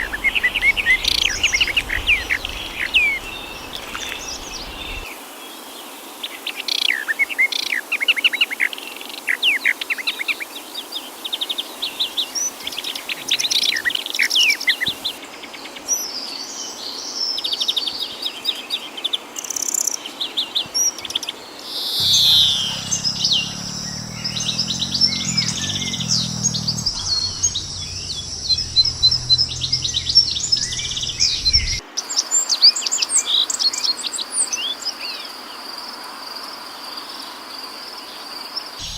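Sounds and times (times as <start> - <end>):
low hum: 21.7 - 31.8
songbirds chirping and singing: 21.8 - 31.8.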